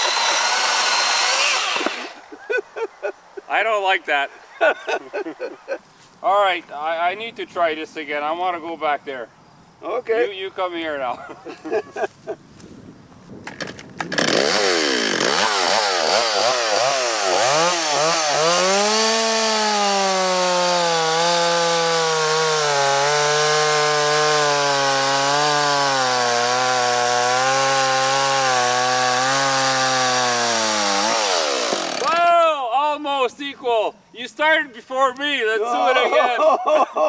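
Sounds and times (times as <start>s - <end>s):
cordless chainsaw cutting wood: 0.0s - 2.2s, 14.1s - 32.3s
gas chainsaw cutting wood: 0.0s - 2.2s, 14.1s - 32.3s.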